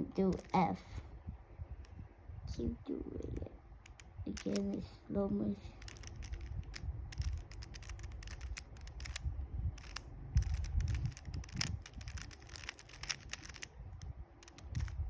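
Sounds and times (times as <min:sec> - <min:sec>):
soft handling rumble: 0:00.0 - 0:15.0
puzzle cube layers clicking: 0:00.3 - 0:00.6, 0:03.9 - 0:04.7, 0:05.8 - 0:09.2, 0:09.8 - 0:13.7, 0:14.4 - 0:15.0.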